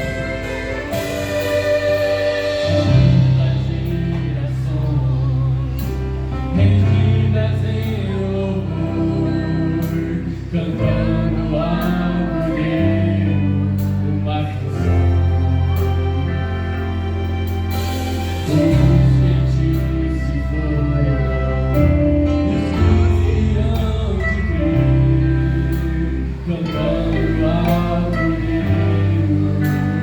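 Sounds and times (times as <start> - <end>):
orchestra playing a gospel hymn: 0.0 - 30.0
person singing: 0.0 - 30.0.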